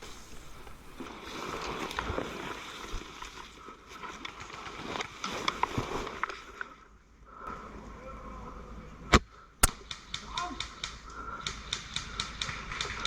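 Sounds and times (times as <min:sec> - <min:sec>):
rustling movement noise: 0:00.0 - 0:06.8.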